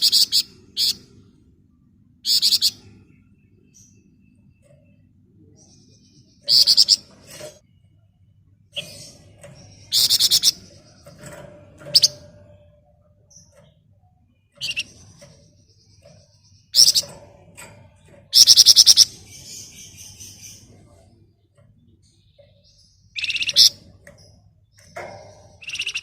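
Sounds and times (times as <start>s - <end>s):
songbird trilling: 2.2s - 2.8s, 6.5s - 7.1s, 9.8s - 11.0s, 14.6s - 14.9s, 16.5s - 17.1s, 18.3s - 20.7s, 22.6s - 23.8s, 25.6s - 26.0s.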